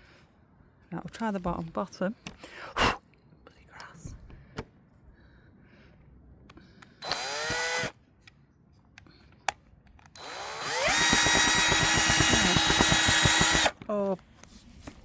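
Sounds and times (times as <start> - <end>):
power drill whining: 7.0 - 8.0, 10.1 - 13.8
fast rattle: 10.7 - 13.7.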